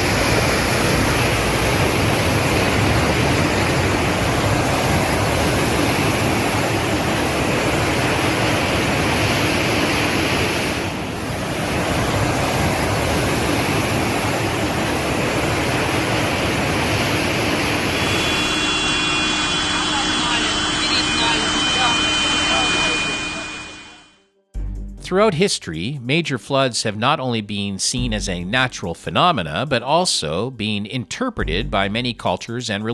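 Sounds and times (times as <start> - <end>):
rushing stormwater: 0.0 - 19.8.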